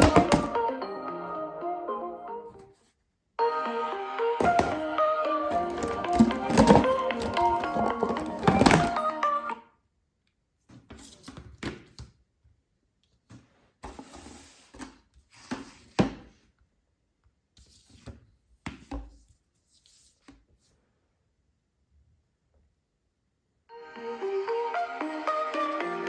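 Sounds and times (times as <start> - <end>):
objects knocking and rubbing: 5.5 - 9.1.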